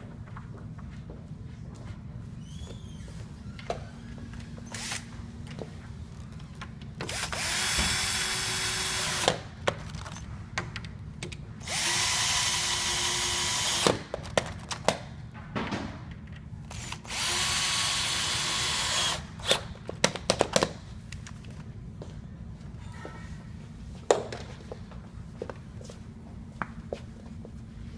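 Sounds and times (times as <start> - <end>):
drill driving screws: 4.7 - 5.1, 7.0 - 9.4, 11.6 - 14.0, 16.7 - 19.7.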